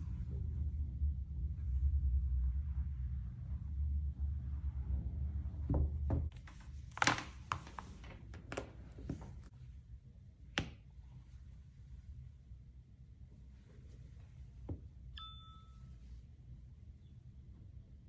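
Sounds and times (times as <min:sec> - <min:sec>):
low hum: 0:00.0 - 0:06.3.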